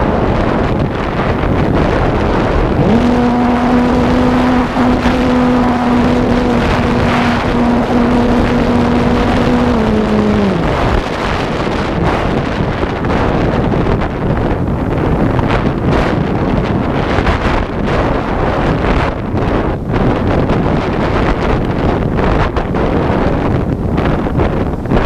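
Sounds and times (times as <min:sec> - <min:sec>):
wind buffeting microphone: 0:00.0 - 0:25.0
motor humming: 0:02.5 - 0:11.4.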